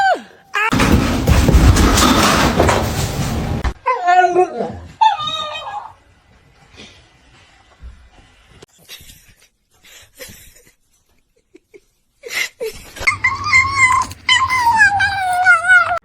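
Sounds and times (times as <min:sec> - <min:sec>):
cat yowling: 0:13.1 - 0:16.0.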